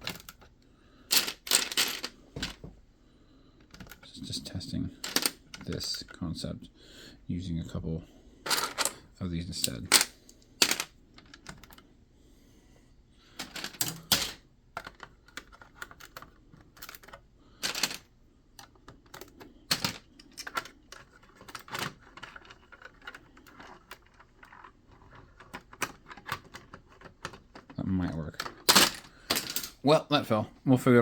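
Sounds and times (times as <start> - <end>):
plastic bricks clicking together: 1.1 - 2.6, 13.4 - 18.0, 18.6 - 29.8.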